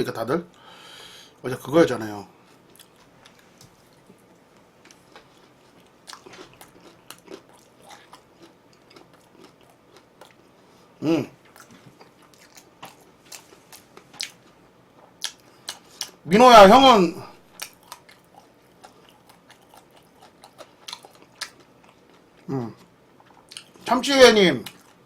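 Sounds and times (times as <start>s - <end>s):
person chewing crunchy food: 2.5s - 10.8s, 11.4s - 16.2s, 17.5s - 23.9s
person humming: 22.5s - 22.8s.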